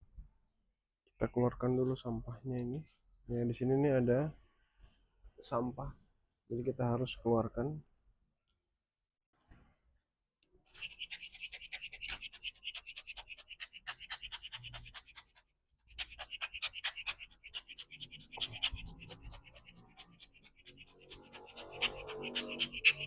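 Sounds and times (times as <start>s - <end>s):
rapid scratching strokes: 10.7s - 23.0s.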